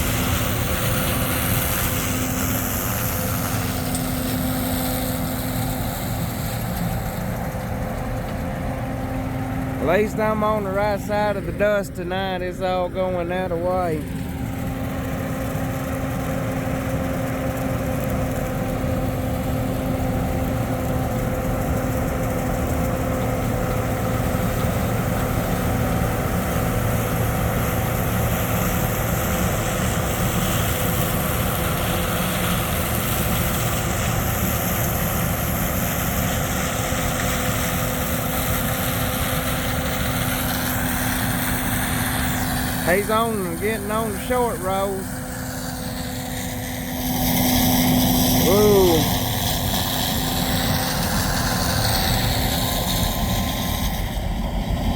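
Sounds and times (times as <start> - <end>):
combine harvester engine drone: 0.0 - 54.9.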